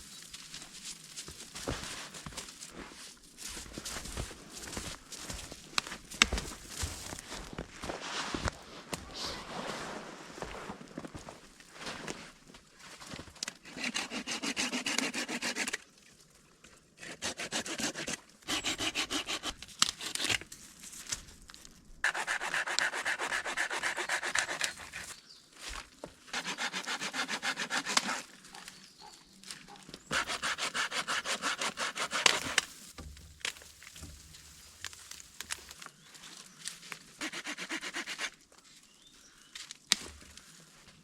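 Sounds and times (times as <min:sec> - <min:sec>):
hand saw cutting wood: 0:13.6 - 0:15.8, 0:17.0 - 0:20.5, 0:22.0 - 0:25.2, 0:26.3 - 0:28.4, 0:30.1 - 0:32.8, 0:37.2 - 0:38.4.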